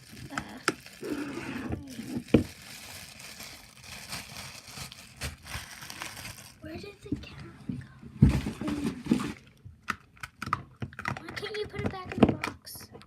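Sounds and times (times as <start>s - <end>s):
slime squelching: 0.0s - 8.0s.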